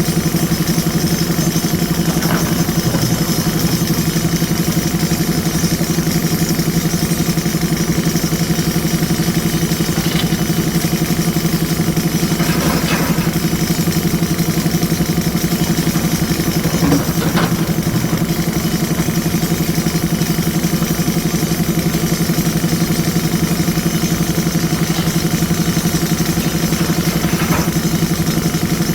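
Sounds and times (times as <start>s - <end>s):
diesel engine running: 0.2s - 28.9s
faint knocks: 2.0s - 4.7s.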